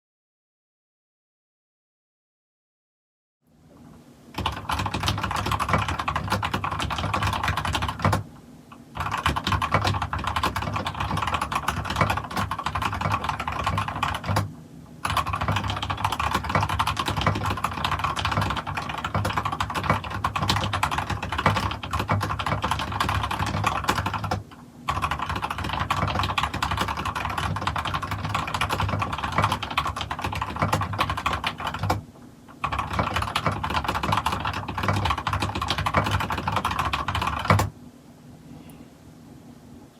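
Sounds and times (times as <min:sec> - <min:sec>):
mechanical keyboard typing: 0:04.4 - 0:08.3, 0:08.9 - 0:37.7.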